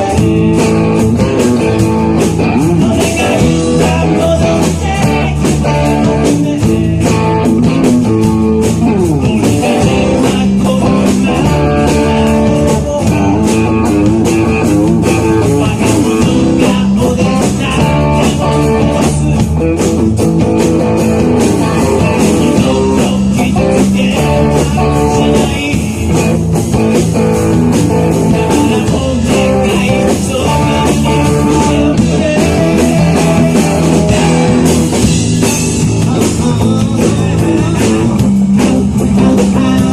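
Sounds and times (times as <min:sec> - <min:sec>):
guitar slides: 0:00.0 - 0:16.9
live rock band playing: 0:00.0 - 0:39.9.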